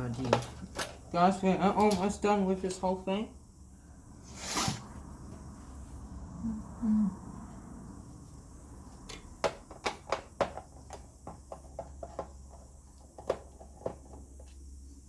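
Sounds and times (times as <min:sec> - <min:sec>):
low steady hum: 0:00.0 - 0:09.4
parts clicking and tapping: 0:08.9 - 0:14.7.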